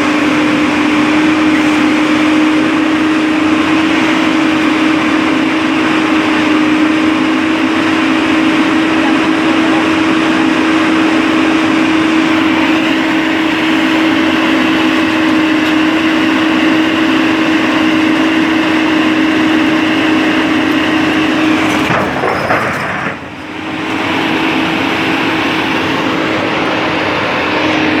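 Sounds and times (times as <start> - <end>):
heavy engine humming: 0.0 - 28.0.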